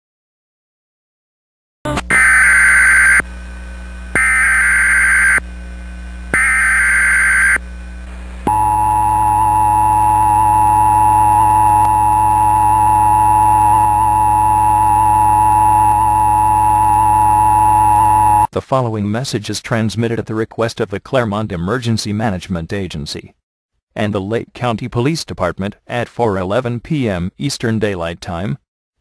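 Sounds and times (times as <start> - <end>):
digital data screech bursts: 4.2 - 5.4, 6.4 - 7.6
two-tone attention signal: 8.5 - 18.5.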